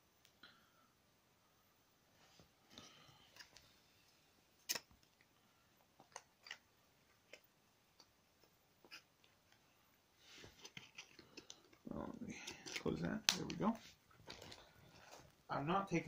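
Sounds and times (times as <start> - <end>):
plastic packaging clicks and crinkles: 10.6 - 15.3.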